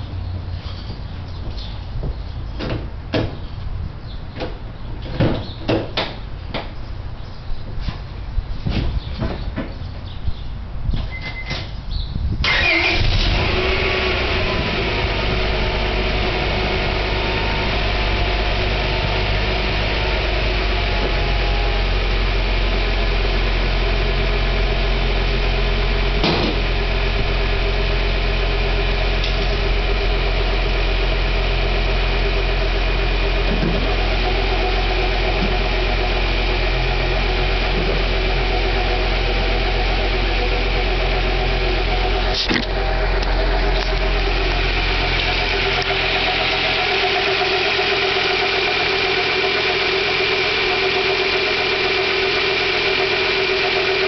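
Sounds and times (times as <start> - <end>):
secondary engine noise: 0.0 - 54.0
car engine idling: 12.5 - 54.0.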